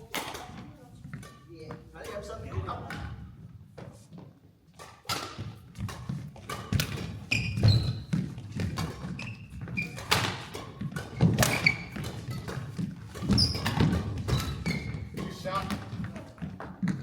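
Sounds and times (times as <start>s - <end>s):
racket hitting shuttlecock: 0.0s - 2.3s, 4.7s - 17.0s
sneaker squeaks on court floor: 5.0s - 16.0s.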